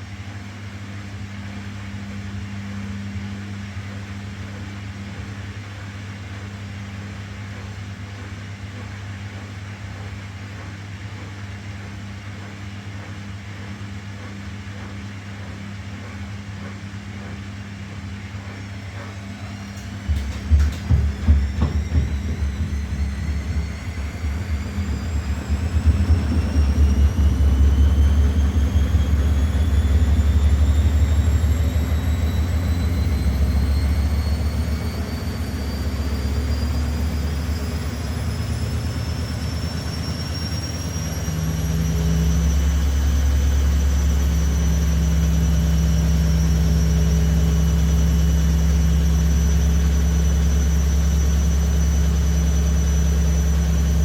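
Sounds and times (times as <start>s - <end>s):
washing machine motor whine: 1.9s - 54.0s
loud low hum: 18.4s - 54.0s.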